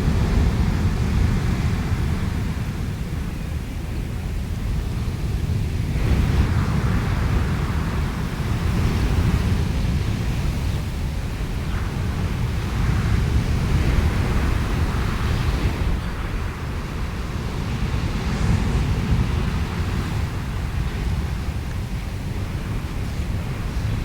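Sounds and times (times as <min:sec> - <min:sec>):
wind and rain hiss: 0:00.0 - 0:24.0.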